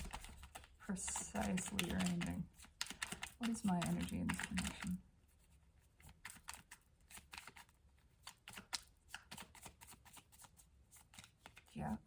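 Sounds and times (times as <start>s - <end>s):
cards being shuffled by hand: 0.0s - 12.0s.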